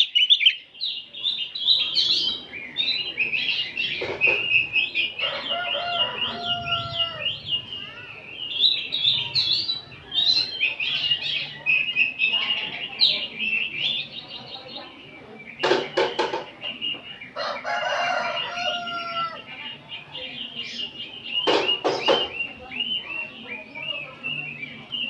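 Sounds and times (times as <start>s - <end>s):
birds singing and chattering: 0.0s - 25.0s
rooster-like crow: 5.2s - 7.4s, 17.4s - 19.4s.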